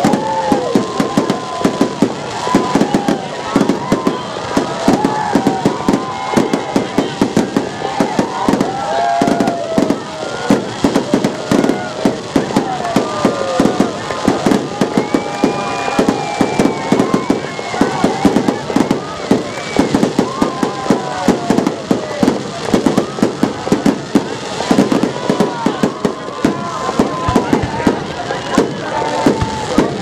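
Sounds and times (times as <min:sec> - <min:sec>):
fireworks bangs and crackles: 0:00.0 - 0:30.0.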